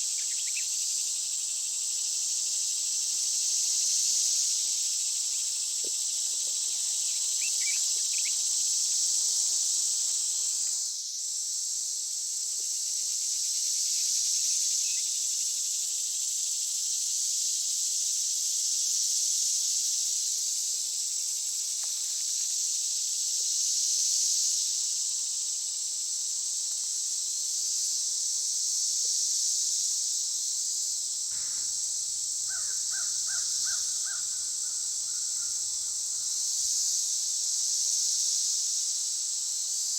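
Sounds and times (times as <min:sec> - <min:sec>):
insect chorus drone: 0:00.0 - 0:39.9
bird calls: 0:31.4 - 0:36.1
faint bird chirps: 0:31.4 - 0:36.2.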